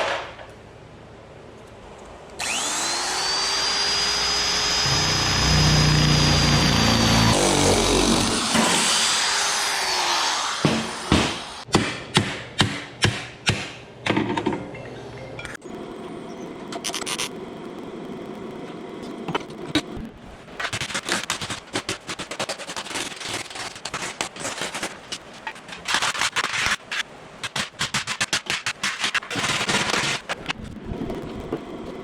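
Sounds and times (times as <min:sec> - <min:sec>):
sharp knocks on metal: 0:10.6 - 0:14.6.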